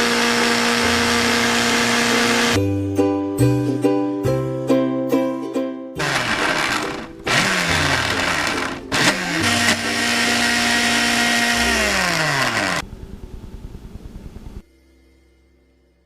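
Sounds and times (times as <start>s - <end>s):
blender motor whining: 0.0s - 2.6s, 6.0s - 12.8s.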